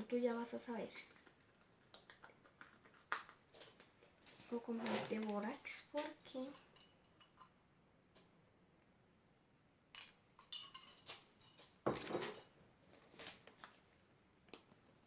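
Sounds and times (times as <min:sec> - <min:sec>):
utensil clinking against container: 0:06.0 - 0:07.5, 0:10.0 - 0:12.5.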